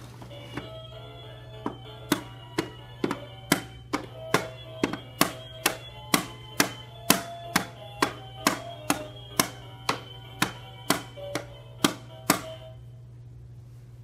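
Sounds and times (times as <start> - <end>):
percussive beat: 2.1 - 12.6.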